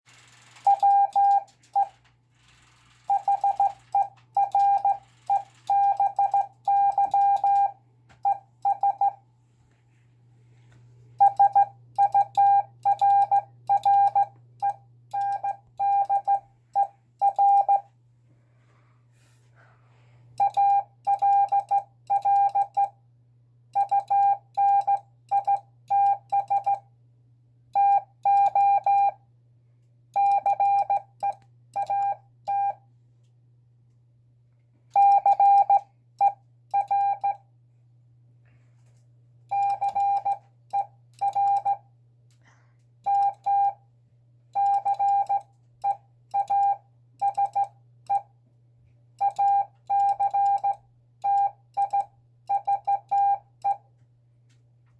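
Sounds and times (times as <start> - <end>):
morse code beeps: 0.2 - 9.2, 11.2 - 17.9, 20.4 - 23.0, 23.8 - 26.8, 27.8 - 29.2, 30.2 - 32.8, 35.0 - 37.4, 39.5 - 41.8, 43.1 - 43.8, 44.6 - 48.3, 49.2 - 53.8.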